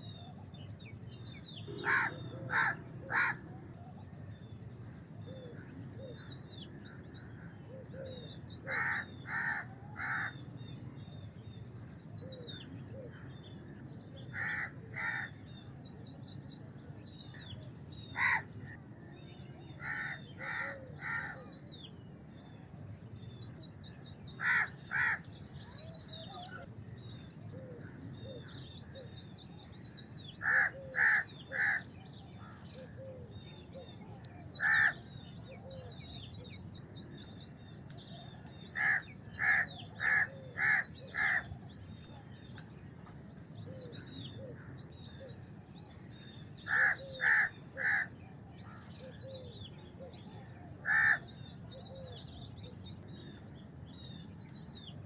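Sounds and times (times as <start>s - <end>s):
small birds chirping: 0.0s - 55.0s
crow cawing: 1.7s - 3.4s, 8.7s - 10.4s, 14.3s - 15.4s, 18.2s - 18.4s, 19.8s - 21.4s, 24.4s - 25.2s, 30.4s - 31.8s, 34.6s - 35.0s, 38.8s - 41.5s, 46.7s - 48.1s, 50.8s - 51.2s.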